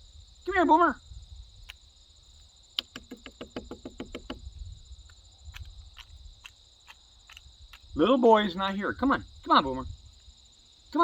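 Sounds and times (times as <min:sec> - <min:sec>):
insects chirring: 0:00.0 - 0:11.0.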